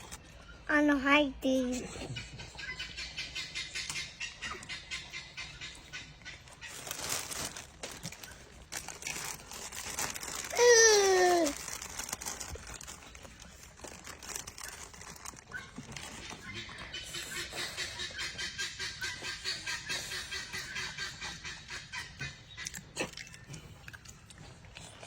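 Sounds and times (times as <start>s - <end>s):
crinkling and rustling: 6.4s - 16.6s
child crying: 10.5s - 11.6s.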